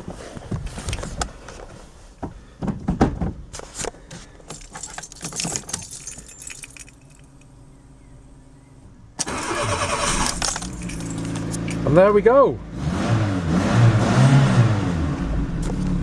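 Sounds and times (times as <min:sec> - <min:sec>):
knocks and bumps: 0:00.0 - 0:03.9
keys jangling: 0:04.4 - 0:07.5, 0:10.1 - 0:11.9.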